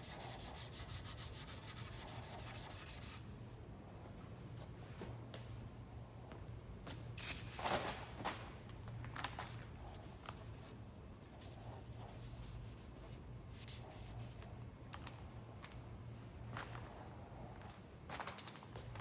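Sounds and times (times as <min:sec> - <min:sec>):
sandpaper rubbing: 0:00.0 - 0:03.2
faint steady hum: 0:00.0 - 0:19.0.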